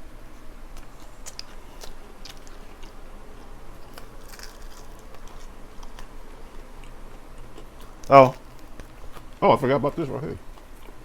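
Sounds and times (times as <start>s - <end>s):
person chewing crispy food: 0.2s - 11.0s.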